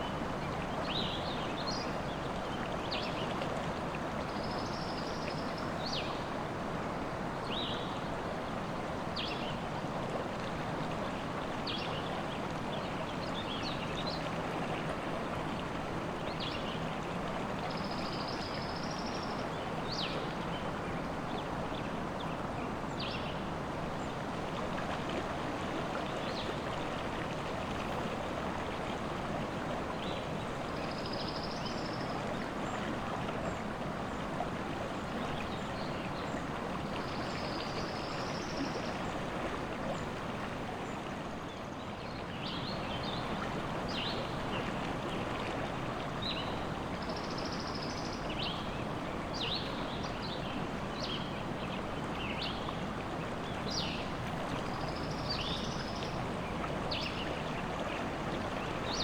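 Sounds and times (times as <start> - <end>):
river water rushing: 19.2 - 59.0
songbirds chirping: 46.2 - 59.0.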